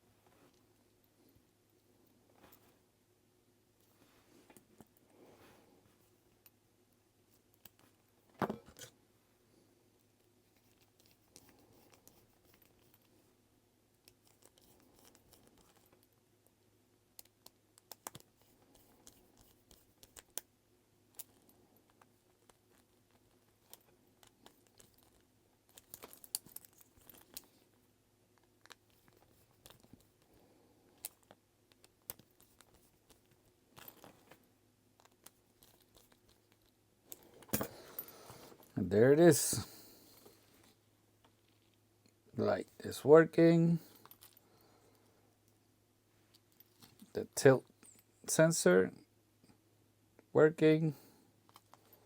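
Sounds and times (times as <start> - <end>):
small clicks and taps: 17.2 - 20.5.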